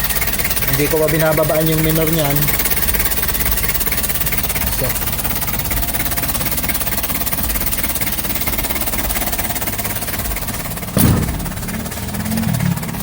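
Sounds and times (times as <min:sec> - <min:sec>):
diesel engine idling: 0:00.0 - 0:13.0
short thump: 0:11.0 - 0:12.0.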